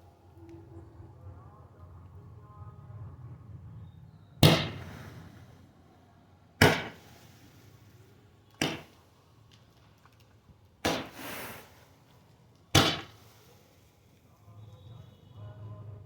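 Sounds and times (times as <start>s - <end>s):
firework bangs: 4.4s - 5.5s, 6.6s - 8.0s, 8.6s - 9.2s, 10.8s - 12.0s, 12.7s - 13.9s.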